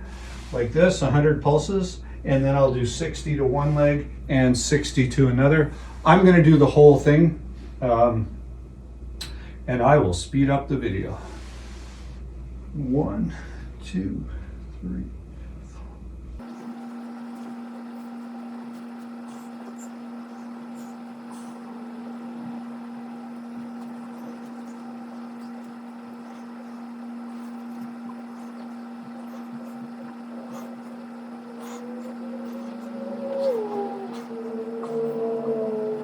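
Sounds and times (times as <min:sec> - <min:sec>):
steady low hum: 0:00.0 - 0:36.0
wavering gliding high tone: 0:19.3 - 0:36.0.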